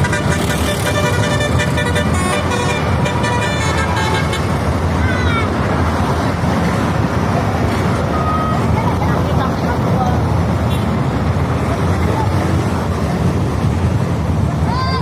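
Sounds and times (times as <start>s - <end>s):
multi-tone musical bus horn: 0.0s - 4.8s
bus engine low rumble: 0.0s - 15.0s
road traffic noise: 0.0s - 15.0s.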